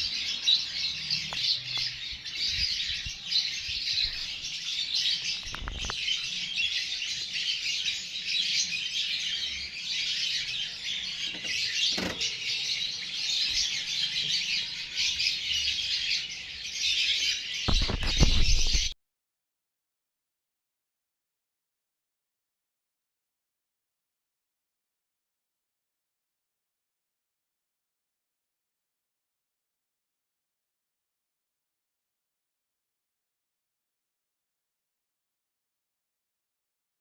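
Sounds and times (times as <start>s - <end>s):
baby parrots chirping: 0.0s - 18.9s.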